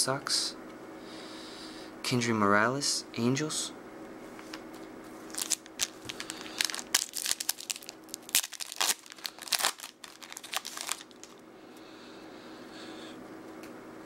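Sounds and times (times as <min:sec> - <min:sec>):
plastic wrapper crinkling: 0:05.2 - 0:11.4.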